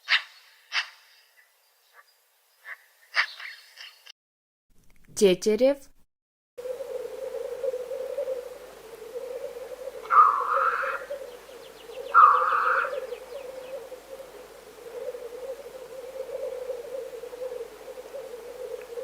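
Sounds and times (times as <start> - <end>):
grouse bubbling cooing: 6.6 - 19.0
loud hissing bird calls: 6.6 - 19.0.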